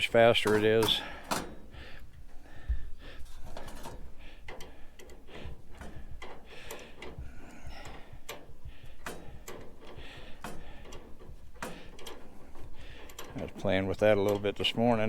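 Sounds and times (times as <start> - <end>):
tool scraping metal: 0.0 - 15.0
metal clicks and clinks: 3.2 - 15.0.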